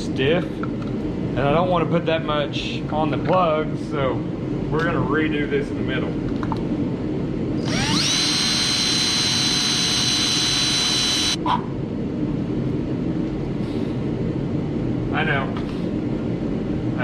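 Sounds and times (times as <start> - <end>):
electric drill whining: 7.6 - 11.4.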